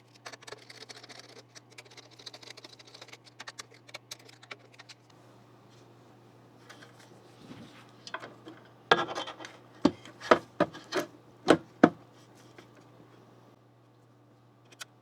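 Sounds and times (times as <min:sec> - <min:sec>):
soft rubbing and scraping: 0:06.6 - 0:11.1
sharp clicks and knocks: 0:08.1 - 0:12.0.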